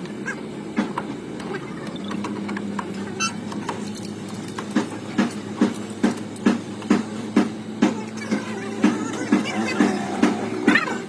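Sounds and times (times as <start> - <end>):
steady mechanical hum: 0.0 - 11.0
regular sharp knocks: 4.6 - 9.4.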